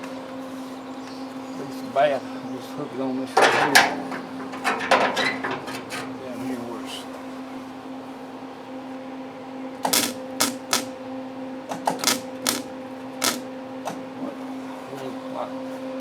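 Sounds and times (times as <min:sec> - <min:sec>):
steady hum: 0:00.0 - 0:16.0
welder arc crackling: 0:09.8 - 0:11.0, 0:11.8 - 0:13.5.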